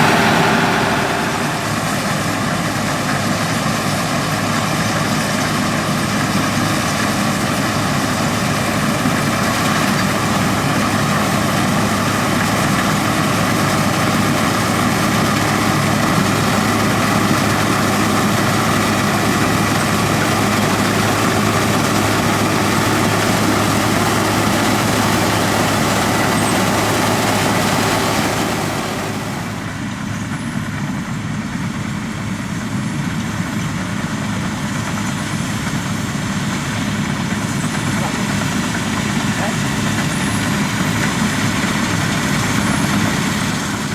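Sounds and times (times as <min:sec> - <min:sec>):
diesel farm machinery engine drone: 0:00.0 - 0:02.9, 0:16.2 - 0:43.9
steady whining tones: 0:00.0 - 0:03.0, 0:27.4 - 0:29.9.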